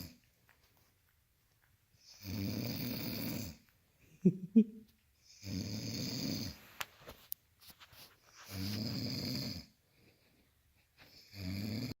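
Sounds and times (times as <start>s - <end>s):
rattling snore: 2.2s - 3.6s, 8.5s - 9.7s.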